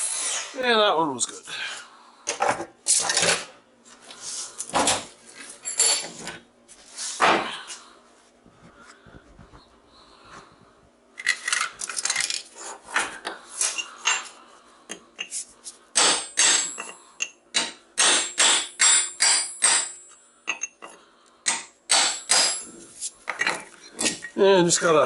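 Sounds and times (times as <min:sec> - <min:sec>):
hammer striking steel chisel: 0:16.0 - 0:20.7, 0:21.5 - 0:22.8.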